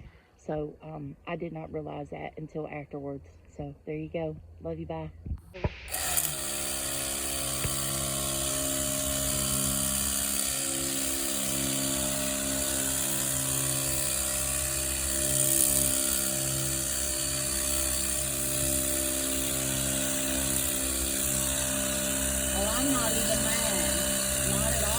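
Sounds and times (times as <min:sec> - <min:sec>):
pressure washer pump humming: 0:05.6 - 0:24.9.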